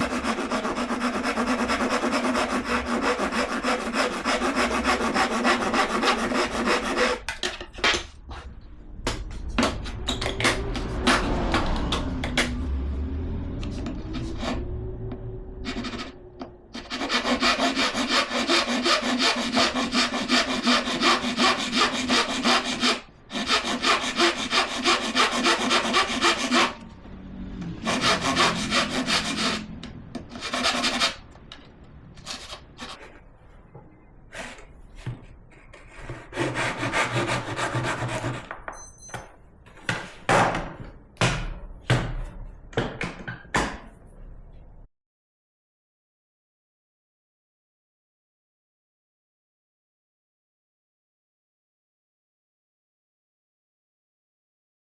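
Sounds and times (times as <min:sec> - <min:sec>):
hand saw cutting wood: 0:00.0 - 0:07.6, 0:15.6 - 0:16.2, 0:16.8 - 0:26.8, 0:27.6 - 0:31.3, 0:35.8 - 0:38.5.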